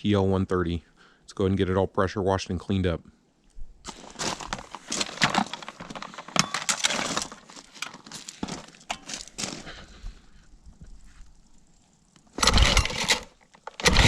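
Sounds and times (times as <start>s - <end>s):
scraping and rustling: 3.9s - 10.1s
gear clattering and clinking: 4.2s - 9.6s, 12.4s - 14.0s.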